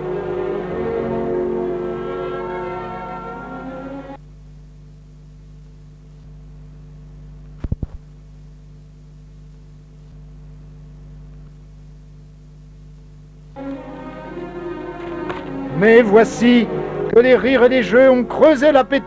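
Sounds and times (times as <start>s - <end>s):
music: 0.0s - 4.2s, 13.6s - 19.0s
steady electrical hum: 0.0s - 19.0s.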